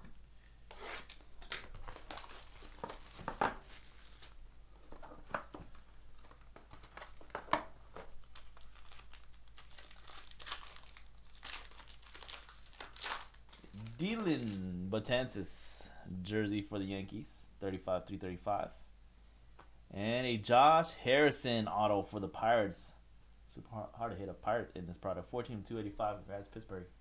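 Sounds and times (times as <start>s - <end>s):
cards being handled: 0.7s - 14.7s
plastic wrapping crinkling: 1.0s - 14.8s.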